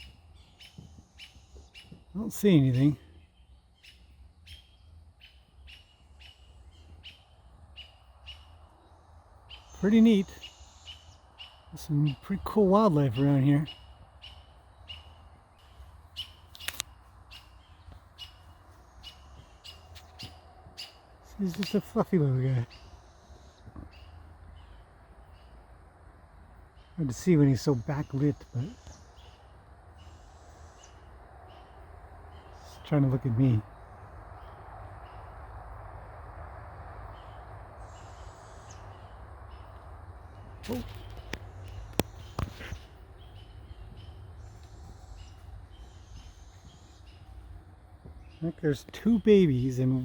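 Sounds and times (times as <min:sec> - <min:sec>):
outdoor background noise: 0:00.0 - 0:50.0
high bird chirps: 0:09.5 - 0:25.5, 0:37.1 - 0:47.5
sharp click: 0:16.5 - 0:16.9.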